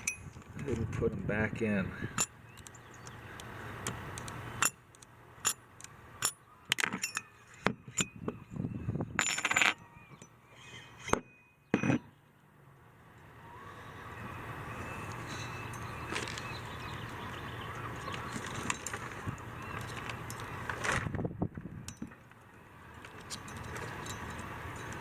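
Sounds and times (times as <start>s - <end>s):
small metal parts clinking: 6.2s - 8.2s, 9.2s - 10.3s, 23.0s - 25.0s.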